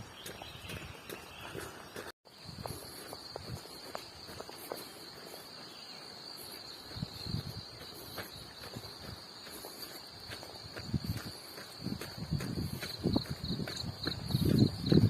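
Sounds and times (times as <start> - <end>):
insects trilling: 1.9 - 15.0.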